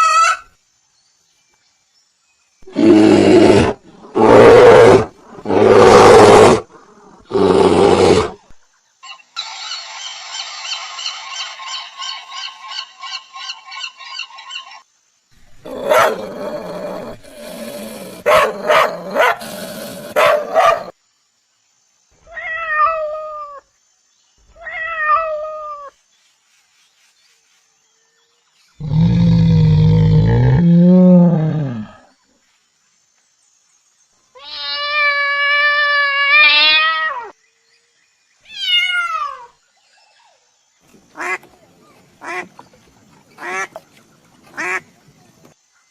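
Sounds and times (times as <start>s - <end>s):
harsh barking calls: 2.7s - 8.4s, 15.6s - 21.0s
cat meowing: 22.3s - 23.6s.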